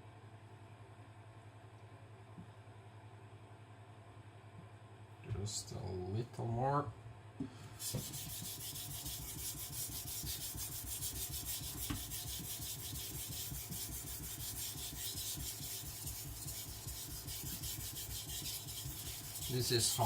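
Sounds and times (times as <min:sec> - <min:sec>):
knife scraping on whetstone: 0:07.8 - 0:20.0.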